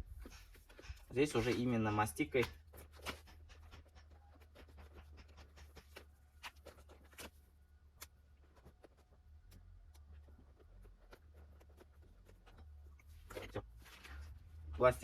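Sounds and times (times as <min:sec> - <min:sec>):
hands scratching plastic trim: 0:02.4 - 0:14.3.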